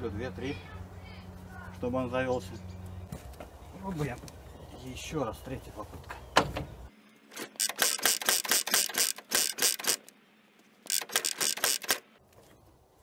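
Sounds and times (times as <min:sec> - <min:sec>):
engine cranking without firing: 0:07.3 - 0:10.1, 0:10.8 - 0:12.2.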